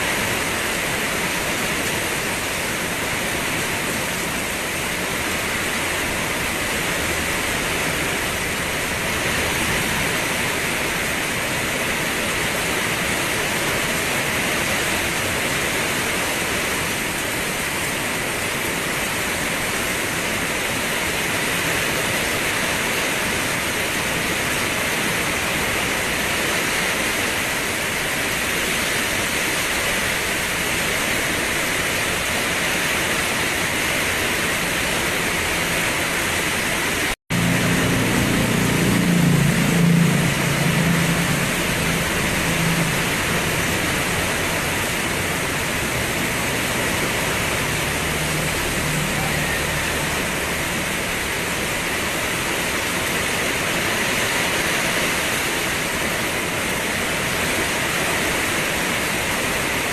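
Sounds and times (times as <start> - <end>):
rain hissing: 0.0 - 59.9
low rumble: 37.3 - 52.8.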